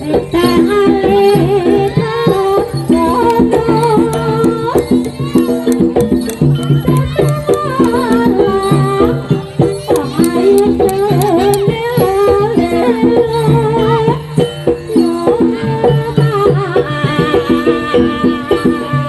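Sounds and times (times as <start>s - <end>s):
percussion strikes: 0.0s - 19.0s.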